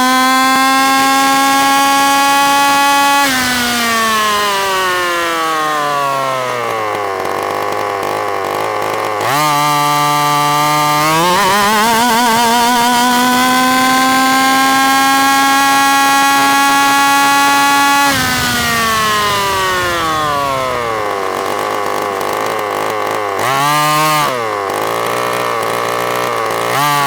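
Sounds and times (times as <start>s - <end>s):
rc car two-stroke engine revving: 0.0s - 27.0s.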